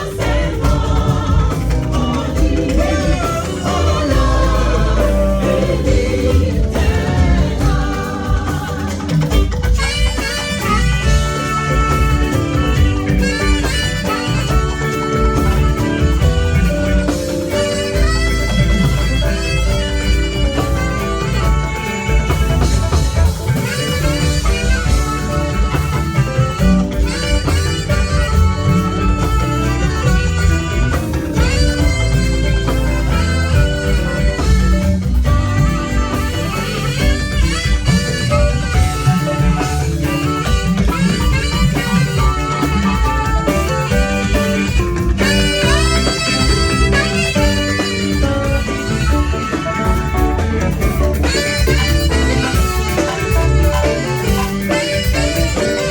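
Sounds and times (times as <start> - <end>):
drum kit: 0.0 - 55.9
instrumental band music: 0.0 - 55.9.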